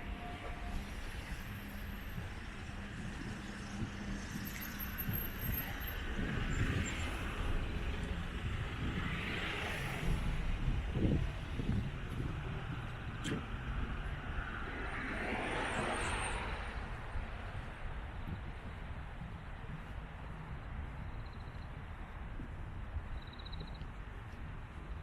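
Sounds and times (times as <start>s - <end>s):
cars driving past: 0.0s - 19.0s
steady low rumble: 0.0s - 25.0s.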